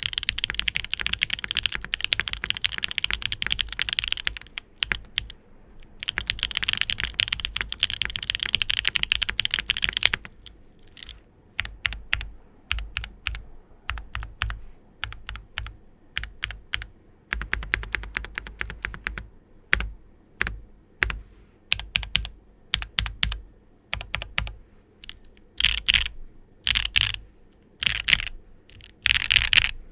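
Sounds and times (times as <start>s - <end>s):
mechanical keyboard typing: 0.0s - 27.2s, 27.8s - 29.8s.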